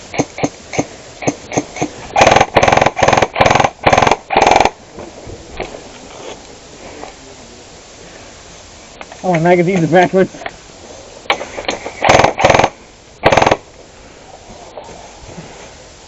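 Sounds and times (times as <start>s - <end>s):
airsoft gun firing: 0.1s - 4.8s, 11.3s - 13.7s.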